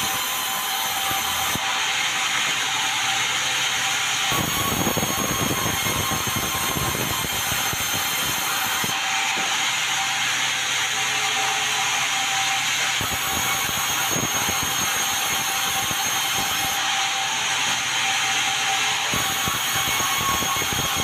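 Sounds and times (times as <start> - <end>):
sawmill saw cutting timber: 0.0 - 21.0.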